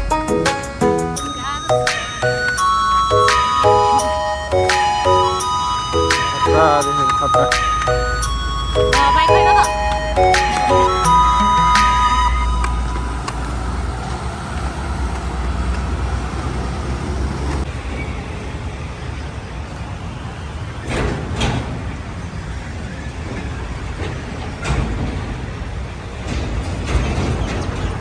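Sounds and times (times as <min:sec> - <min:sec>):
heavy road traffic rumble: 0:00.0 - 0:28.0.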